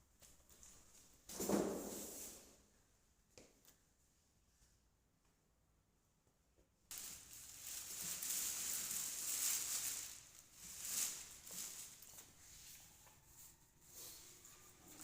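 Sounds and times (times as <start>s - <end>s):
packaging rustling and scraping: 6.9s - 15.0s.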